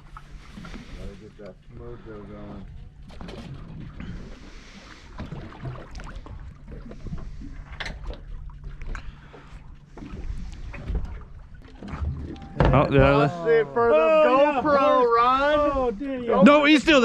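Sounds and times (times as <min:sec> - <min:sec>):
steady low hum: 0:00.0 - 0:17.0
water noise: 0:00.0 - 0:17.0
wind: 0:00.0 - 0:17.0.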